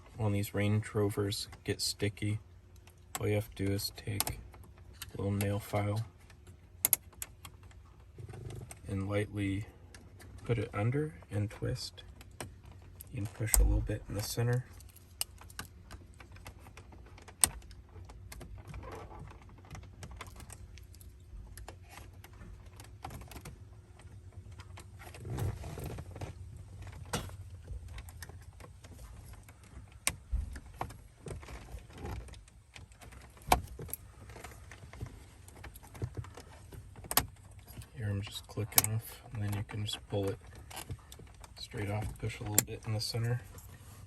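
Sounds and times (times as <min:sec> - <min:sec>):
low steady hum: 0:00.0 - 0:44.0.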